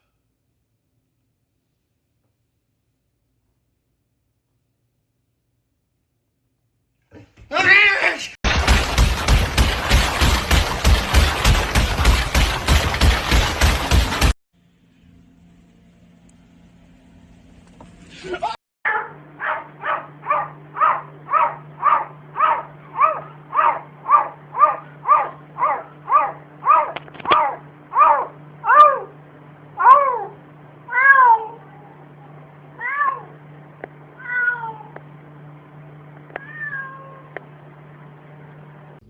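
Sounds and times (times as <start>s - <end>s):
cat meowing: 29.8s - 31.9s, 32.8s - 33.3s, 34.2s - 35.0s, 36.4s - 37.3s.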